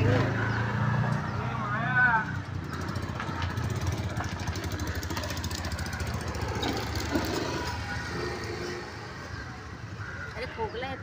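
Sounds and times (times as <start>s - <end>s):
engine idling: 2.5s - 7.8s.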